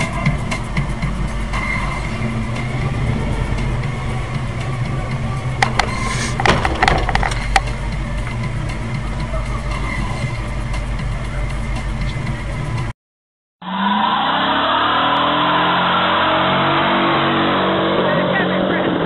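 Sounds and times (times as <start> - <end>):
car engine rumble: 0.0 - 12.9, 13.9 - 19.0
road noise: 0.0 - 12.9, 13.6 - 19.0
sharp knocks and clatter: 5.6 - 7.7.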